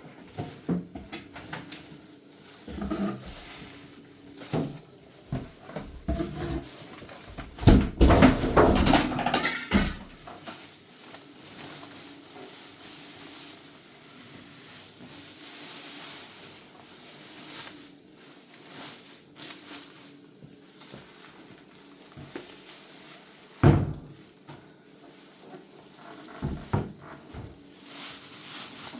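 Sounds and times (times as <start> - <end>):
handling rustling: 9.4 - 28.9.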